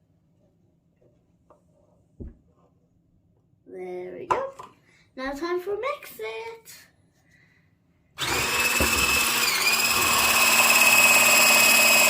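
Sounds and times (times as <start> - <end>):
electric mixer whining: 8.2 - 12.0.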